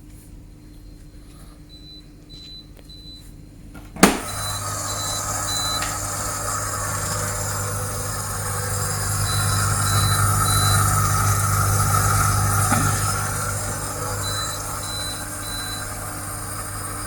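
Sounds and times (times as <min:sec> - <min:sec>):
dishwasher drain pump humming: 0:03.7 - 0:17.0
short high alarm beeps: 0:04.2 - 0:05.8, 0:08.8 - 0:15.9.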